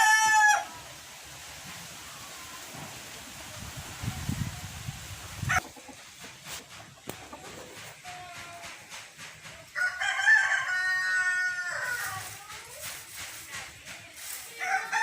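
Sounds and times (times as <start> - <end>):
rooster crowing: 0.0 - 0.7, 9.7 - 12.3.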